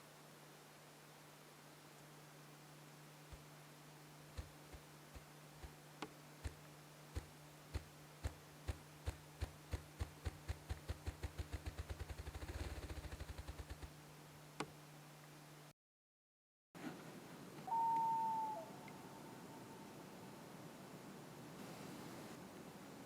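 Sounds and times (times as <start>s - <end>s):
steady low hum: 0.0s - 15.7s, 16.8s - 23.0s.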